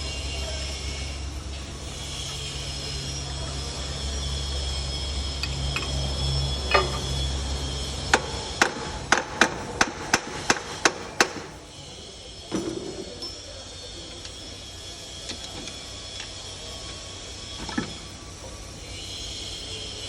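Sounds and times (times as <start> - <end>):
steady low hum: 0.0 - 20.0
hammer tapping on metal: 8.1 - 11.6.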